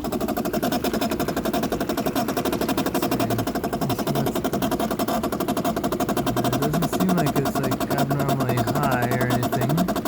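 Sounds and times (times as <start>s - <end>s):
water valve rattling buzz: 0.0s - 10.0s
dishwasher filling with water: 6.2s - 10.0s.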